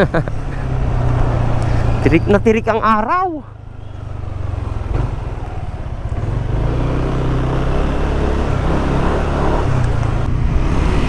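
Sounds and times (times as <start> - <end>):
wind rushing over microphone: 4.9 - 11.0.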